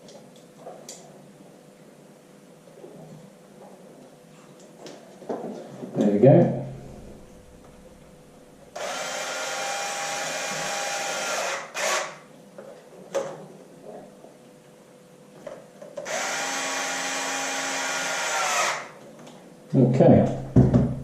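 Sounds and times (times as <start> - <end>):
small electric motor running: 8.8 - 12.2, 16.0 - 19.0.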